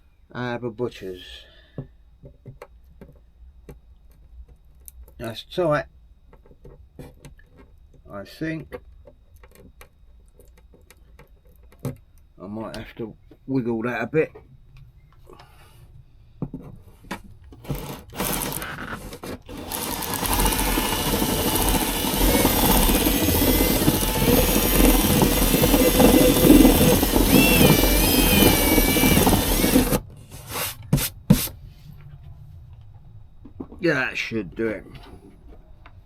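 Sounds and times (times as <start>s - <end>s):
power drill running: 17.6s - 30.8s.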